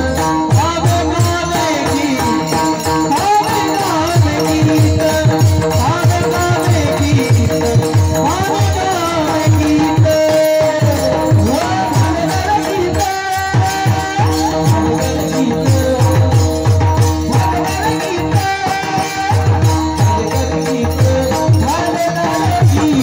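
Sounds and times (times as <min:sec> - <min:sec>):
drum beating steady rhythm: 0:00.0 - 0:23.0
person singing devotional song: 0:00.0 - 0:23.0.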